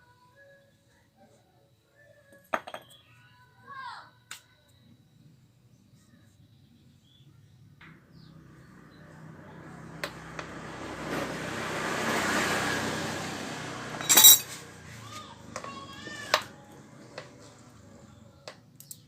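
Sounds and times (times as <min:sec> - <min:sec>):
motor vehicle passing by: 0:07.8 - 0:18.3.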